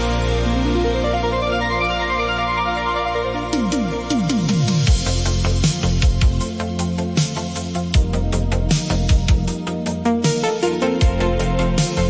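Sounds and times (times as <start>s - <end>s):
drum beat with kick and hi-hats: 3.5s - 12.0s.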